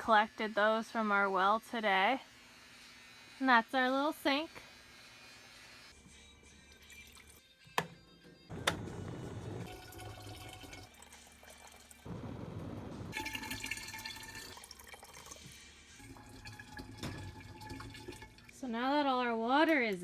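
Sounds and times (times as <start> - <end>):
water pouring into tank: 9.6 - 12.1, 13.1 - 18.6.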